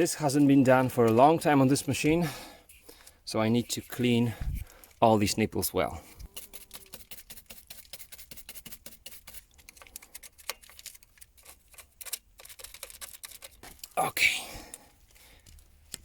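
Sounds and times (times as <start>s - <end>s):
light clicks and scrapes on metal: 0.4s - 5.0s, 6.1s - 14.0s.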